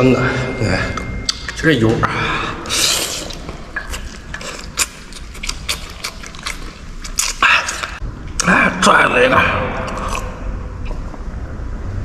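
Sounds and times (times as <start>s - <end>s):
chewing crunchy cartilage: 2.8s - 8.0s, 9.8s - 11.0s.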